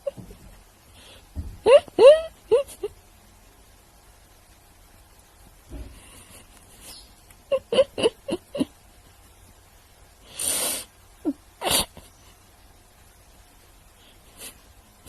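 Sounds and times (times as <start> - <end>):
parrot breathy hiss: 10.2 - 11.0.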